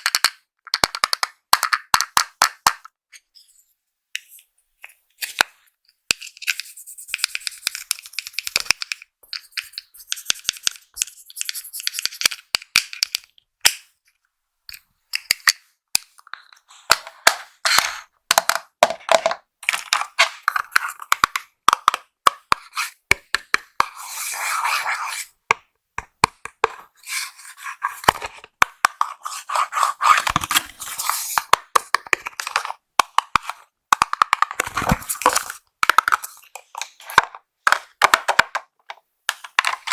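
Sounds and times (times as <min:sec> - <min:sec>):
packaging crinkling and scraping: 0:34.5 - 0:37.2.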